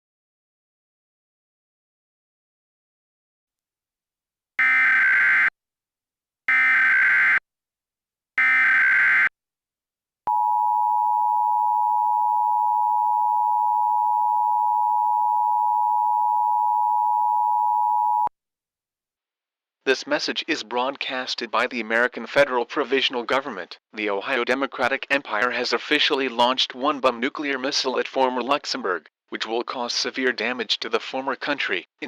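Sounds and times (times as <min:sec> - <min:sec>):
two-tone attention signal: 0:10.3 - 0:18.3.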